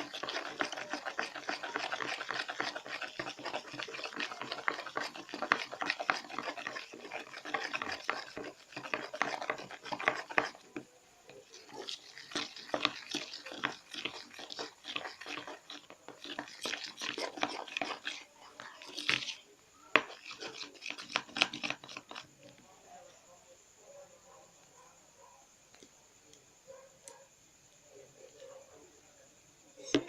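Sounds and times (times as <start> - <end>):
spoon stirring sticky slime: 0.0 - 22.6.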